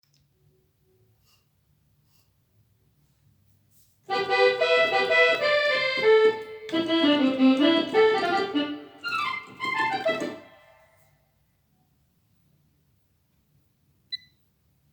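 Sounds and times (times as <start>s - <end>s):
keyboard melody over chords: 4.1s - 10.6s.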